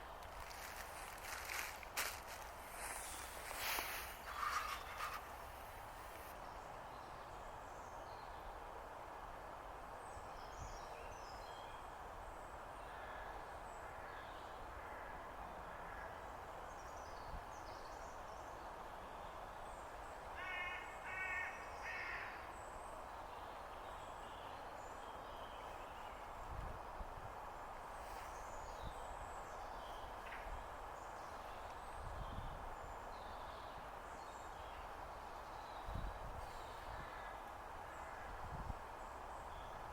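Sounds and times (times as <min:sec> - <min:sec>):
small birds chirping: 0:00.0 - 0:06.3
background hiss: 0:00.0 - 0:07.0.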